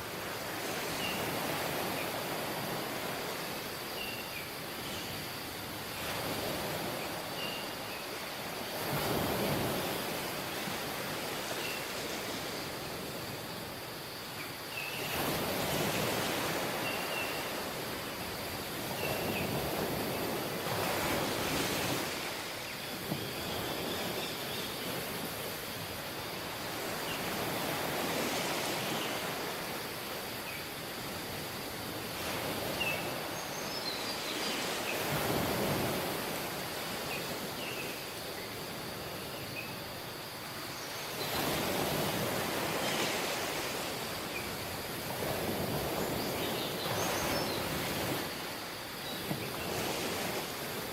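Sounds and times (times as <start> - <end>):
waves washing onto beach: 0.0 - 50.9.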